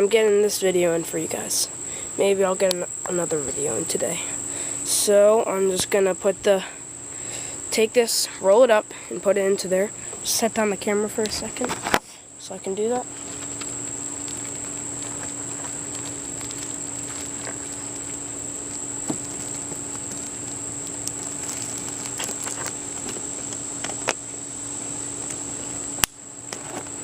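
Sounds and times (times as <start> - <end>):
insect trilling: 0.0 - 26.6
low steady hum: 0.0 - 27.0
faint clicks and rustles: 13.1 - 24.2.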